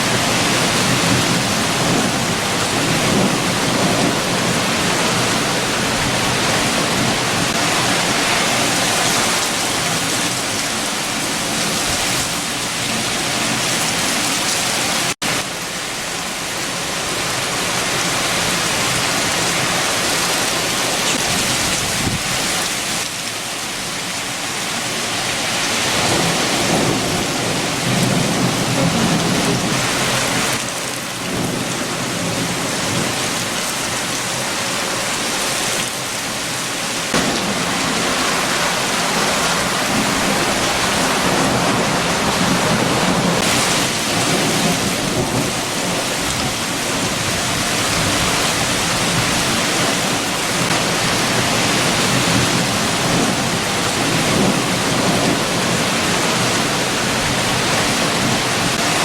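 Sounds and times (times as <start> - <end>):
heavy rain falling: 0.0 - 59.0
strong wind: 0.0 - 59.0.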